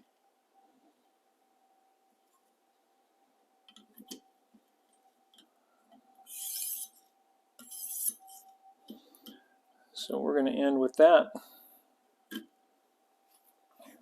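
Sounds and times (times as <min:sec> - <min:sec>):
sharpening stone hissing on steel: 0:06.3 - 0:07.0, 0:07.6 - 0:08.4.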